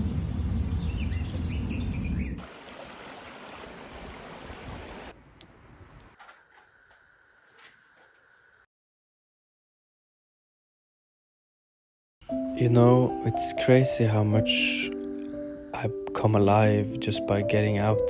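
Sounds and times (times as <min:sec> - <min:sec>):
low rumble: 0:00.0 - 0:02.4
stream rushing: 0:02.4 - 0:05.2.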